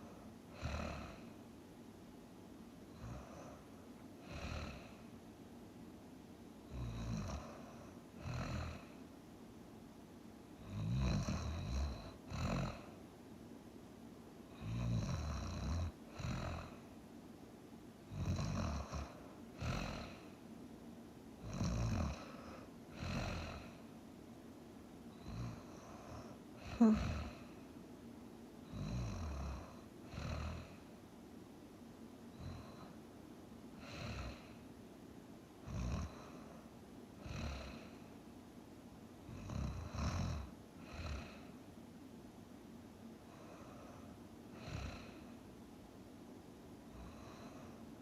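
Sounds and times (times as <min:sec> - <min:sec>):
person snoring: 0:00.0 - 0:01.3, 0:02.9 - 0:03.6, 0:04.2 - 0:05.0, 0:06.7 - 0:09.0, 0:10.6 - 0:13.0, 0:14.5 - 0:16.8, 0:18.1 - 0:20.3, 0:21.4 - 0:23.8, 0:25.2 - 0:27.6, 0:28.7 - 0:30.8, 0:33.8 - 0:34.6, 0:35.6 - 0:38.1, 0:39.3 - 0:41.5, 0:43.3 - 0:45.3, 0:46.9 - 0:47.8.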